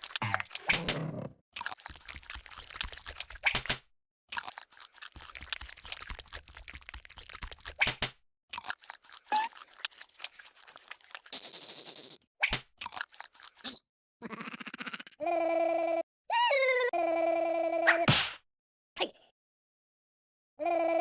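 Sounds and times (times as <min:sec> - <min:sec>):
cartoon crunching: 0:00.0 - 0:03.4, 0:04.3 - 0:08.0, 0:08.6 - 0:12.1.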